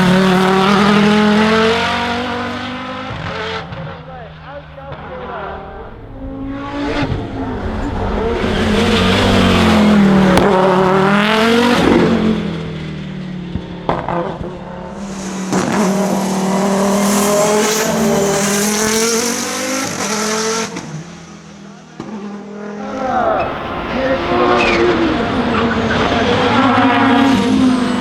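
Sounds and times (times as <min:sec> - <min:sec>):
race car engine revving: 0:00.0 - 0:28.0.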